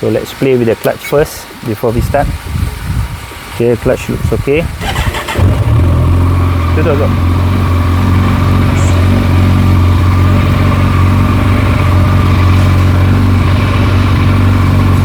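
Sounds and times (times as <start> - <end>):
motorcycle engine idling: 4.8 - 15.0.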